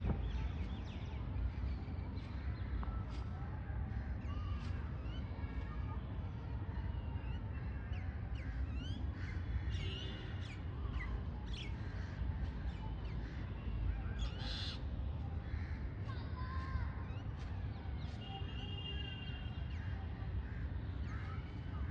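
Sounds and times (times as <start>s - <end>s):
birds calling and chirping: 7.0s - 21.9s.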